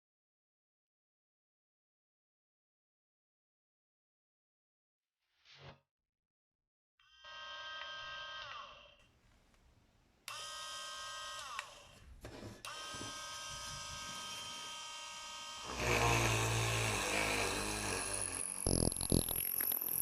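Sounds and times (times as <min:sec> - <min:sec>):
mini drill motor whine: 0:07.0 - 0:09.0, 0:10.3 - 0:12.0, 0:12.6 - 0:20.0.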